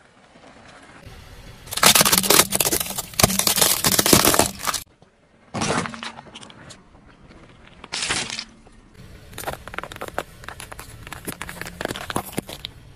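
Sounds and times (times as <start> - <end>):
low hum: 0.2 - 5.4, 8.6 - 12.9
tyre crushing something brittle: 1.7 - 4.9, 7.8 - 8.6, 9.3 - 12.9.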